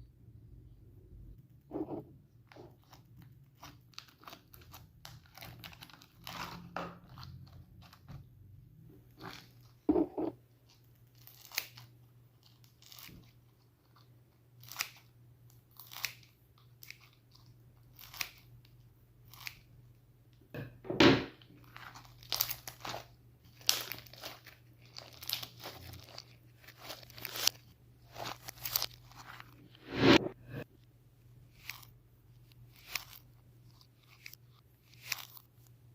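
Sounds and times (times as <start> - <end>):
slime crunching and popping: 21.6 - 29.6.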